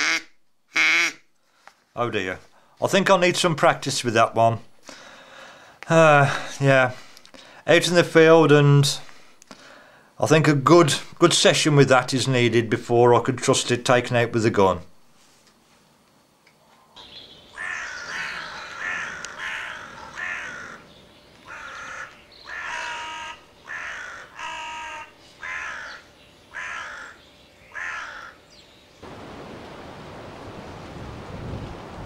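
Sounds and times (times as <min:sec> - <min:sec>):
crow call caws: 0:17.5 - 0:28.4
steady wind noise: 0:29.0 - 0:32.0.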